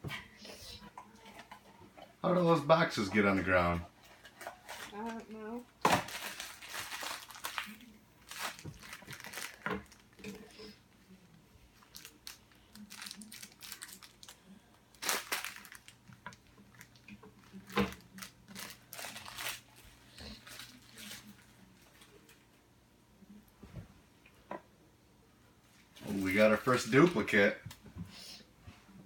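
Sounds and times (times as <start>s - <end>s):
foil bag crinkling: 6.0s - 10.6s, 11.7s - 22.3s
cardboard packaging being torn open: 15.0s - 15.9s, 17.6s - 19.7s.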